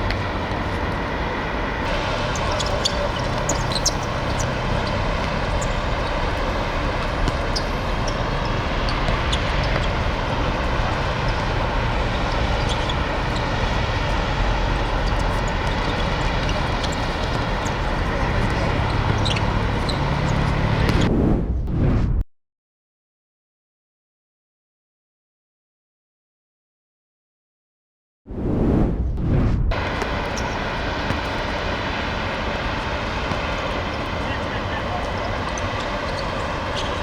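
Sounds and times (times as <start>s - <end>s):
steady rumbling: 0.0s - 22.2s.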